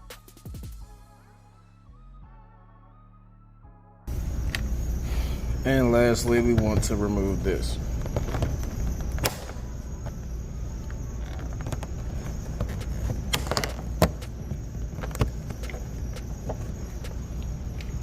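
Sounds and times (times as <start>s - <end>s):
steady low rumble: 4.1s - 18.0s.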